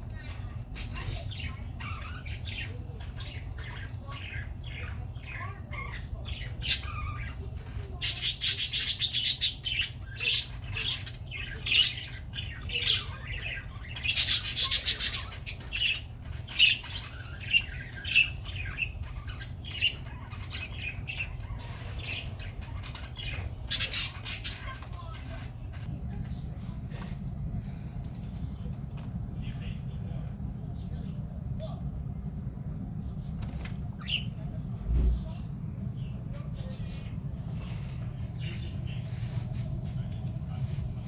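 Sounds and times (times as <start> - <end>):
budgerigars chirping: 0.1 - 25.9.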